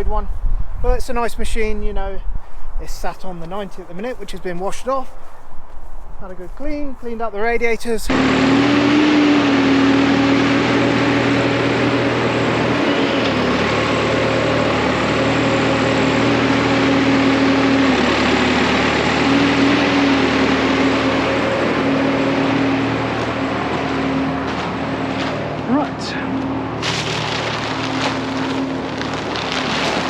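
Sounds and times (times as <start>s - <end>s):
tractor diesel engine running: 8.1s - 30.0s.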